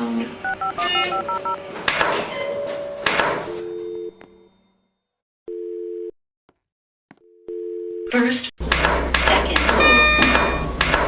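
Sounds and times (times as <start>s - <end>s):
telephone line click: 8.8s - 11.0s.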